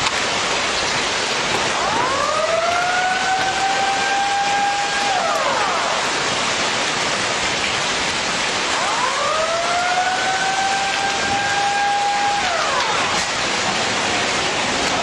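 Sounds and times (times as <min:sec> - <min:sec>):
warning siren wailing: 0:01.6 - 0:06.9, 0:08.6 - 0:14.0.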